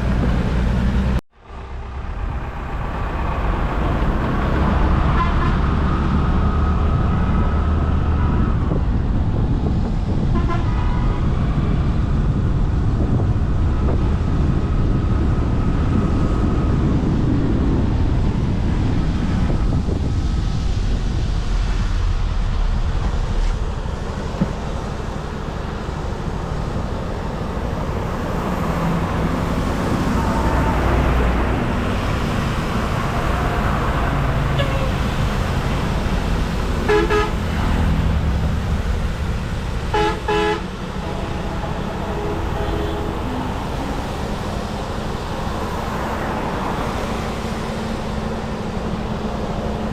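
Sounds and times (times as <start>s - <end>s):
wind and road noise: 0.0s - 49.9s
vehicle horns honking: 5.1s - 5.7s, 10.3s - 11.1s, 34.4s - 35.2s, 36.8s - 37.6s, 39.9s - 43.9s.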